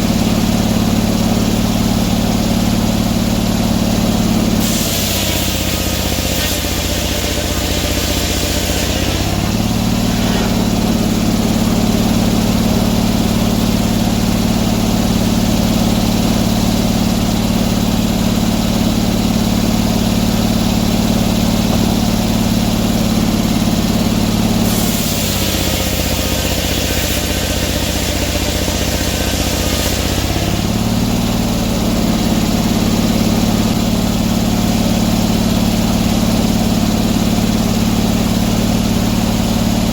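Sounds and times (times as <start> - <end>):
engine running: 0.0 - 39.9
hiss: 4.6 - 10.8, 24.6 - 30.6.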